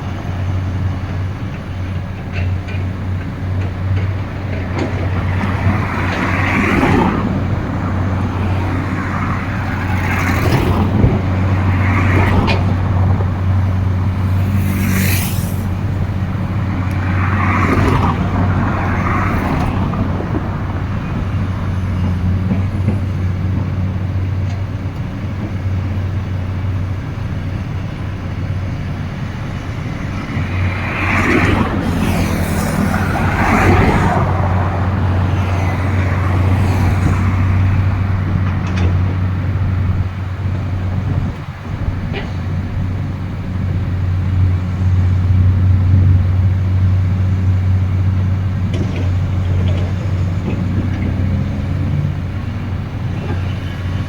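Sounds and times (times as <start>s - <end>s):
excavator diesel engines running: 0.0s - 54.0s
short rushes of noise: 13.5s - 17.5s.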